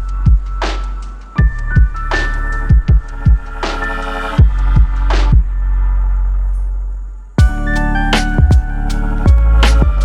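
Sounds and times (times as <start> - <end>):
electronic music with heavy beat: 0.0 - 6.0, 7.4 - 10.0
deep bass drum hits: 1.4 - 5.8, 7.4 - 10.0.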